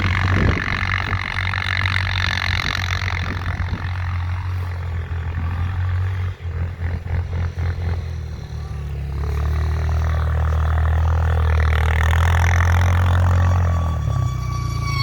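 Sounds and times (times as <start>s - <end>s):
quad bike engine hum: 0.0s - 15.0s.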